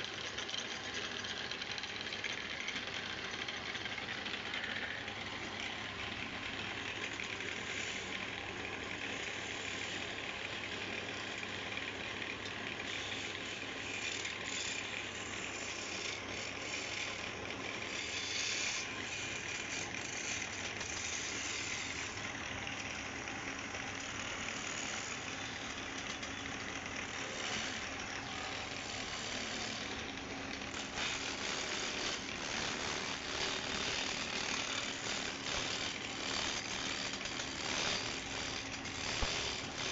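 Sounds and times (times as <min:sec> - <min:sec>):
wood lathe running: 0:00.0 - 0:39.9.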